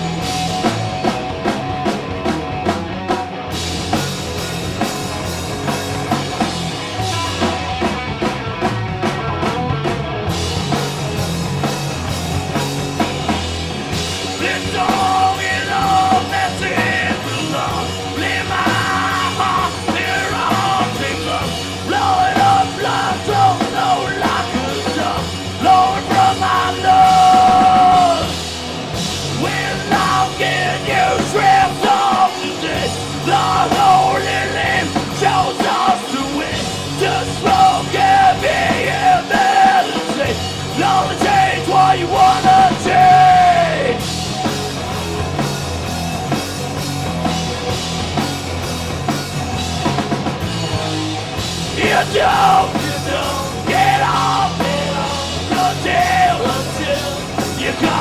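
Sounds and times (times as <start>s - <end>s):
punk rock band playing: 0.0s - 58.0s
shouted vocals: 14.3s - 28.5s, 29.2s - 44.2s, 51.6s - 58.0s.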